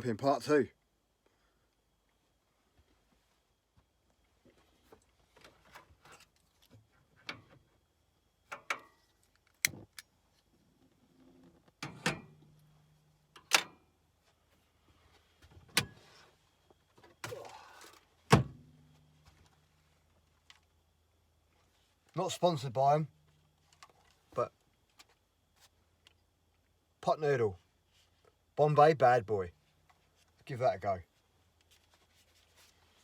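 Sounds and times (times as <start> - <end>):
freezer compressor hum: 9.6 - 27.6.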